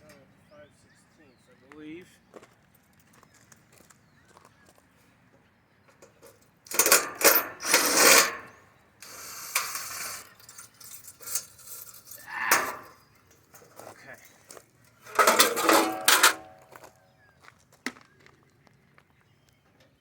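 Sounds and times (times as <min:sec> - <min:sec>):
sheet metal clattering: 0:06.7 - 0:13.0, 0:14.9 - 0:16.7
metal scraping rasp: 0:06.7 - 0:13.8, 0:14.9 - 0:16.6.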